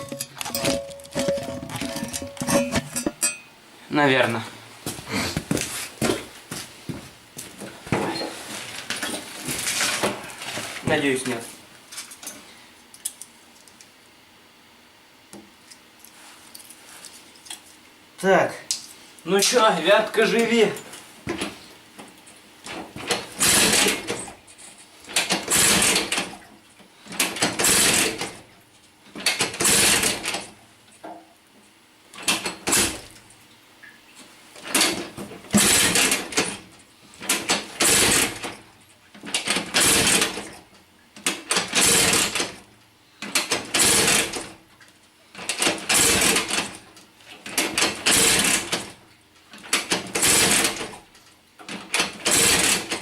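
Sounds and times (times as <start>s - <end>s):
scooter engine kick-start clatter: 22.7s - 24.4s, 25.1s - 26.4s, 27.2s - 28.4s, 29.2s - 30.5s, 32.2s - 33.1s, 34.6s - 36.6s, 37.2s - 38.6s, 39.2s - 40.6s, 41.2s - 42.6s, 43.2s - 44.6s, 45.4s - 46.8s, 47.4s - 48.9s, 49.6s - 51.0s, 51.7s - 53.0s.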